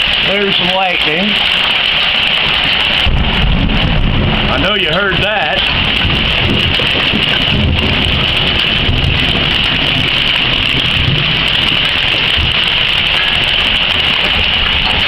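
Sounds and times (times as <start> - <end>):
hail and rain clattering: 0.0 - 15.0
low rumble: 1.4 - 15.0.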